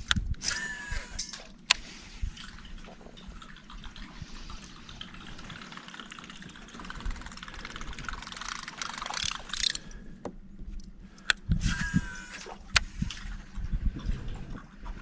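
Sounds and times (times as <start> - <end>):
water splashing and trickling: 1.4 - 10.1, 12.0 - 15.0.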